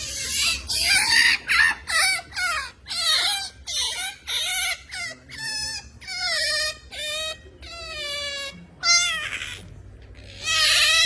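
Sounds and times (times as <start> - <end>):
otter squeaky calls: 0.0 - 9.6, 10.2 - 11.0.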